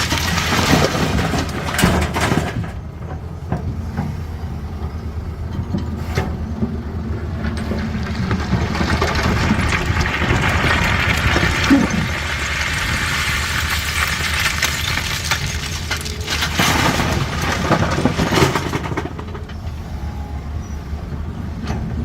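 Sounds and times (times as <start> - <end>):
excavator diesel engine running: 0.0 - 22.0
stones knocking and clattering: 7.8 - 19.2.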